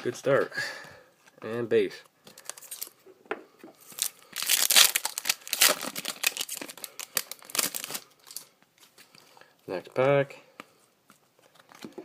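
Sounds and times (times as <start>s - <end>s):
wrapper tearing and crinkling: 2.4s - 3.0s, 3.9s - 8.5s.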